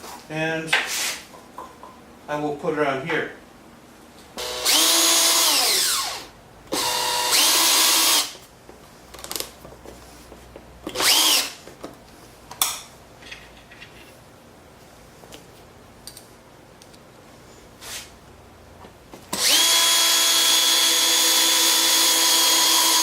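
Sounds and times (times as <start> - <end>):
power drill whining: 4.4 - 8.4, 10.9 - 11.6, 19.3 - 23.0.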